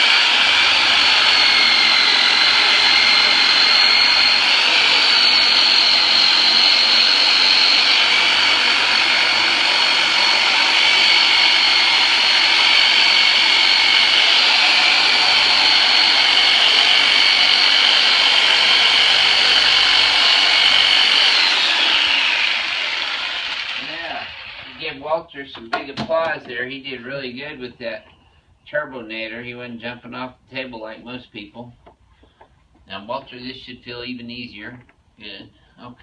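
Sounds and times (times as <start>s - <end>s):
electric massager motor whine: 0.0s - 24.8s.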